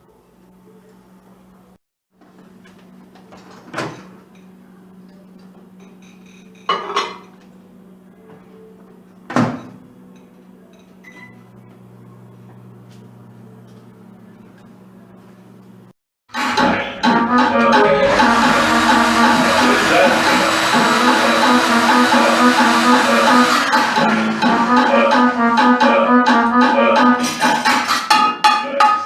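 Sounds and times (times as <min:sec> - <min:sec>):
appliance hum: 0:00.0 - 0:28.1
kitchen clatters: 0:05.8 - 0:07.4, 0:27.2 - 0:29.0
low hum: 0:16.5 - 0:26.9.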